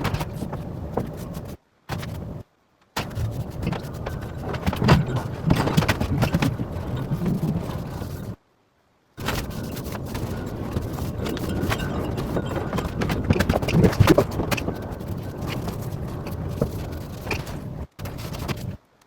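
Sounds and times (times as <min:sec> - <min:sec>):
handling clicks and knocks: 0:03.0 - 0:08.4, 0:09.2 - 0:18.7.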